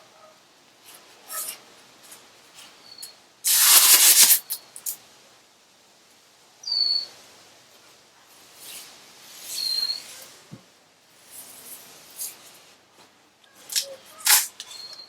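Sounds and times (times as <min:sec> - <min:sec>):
air blow gun hissing: 0:03.5 - 0:04.6.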